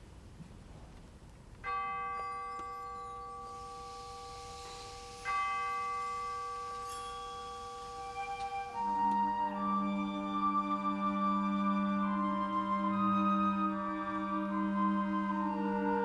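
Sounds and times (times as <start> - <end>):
bell-like percussion strokes: 1.6 - 12.3
wind ensemble playing: 3.5 - 16.0.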